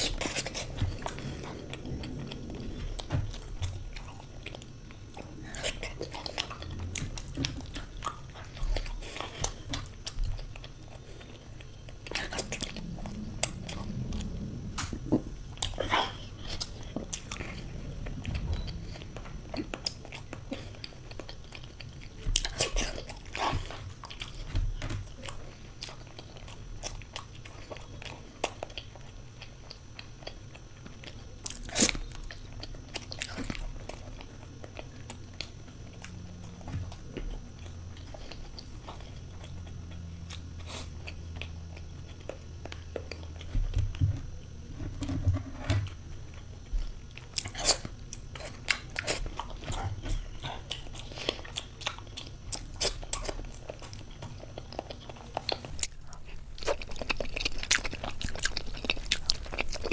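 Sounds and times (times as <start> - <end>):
person biting and chewing: 47.3 - 59.9.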